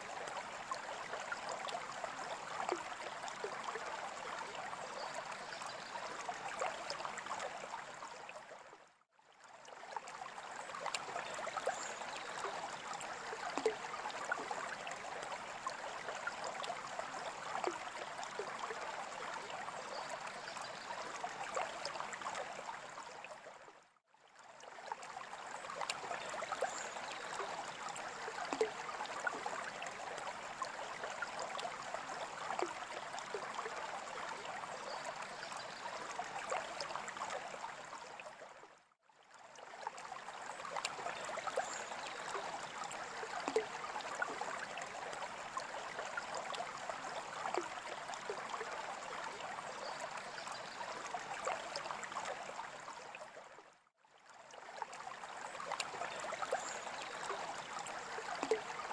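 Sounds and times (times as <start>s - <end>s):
drips and bubbles: 0.0s - 58.9s
aquarium water trickling: 54.6s - 58.9s.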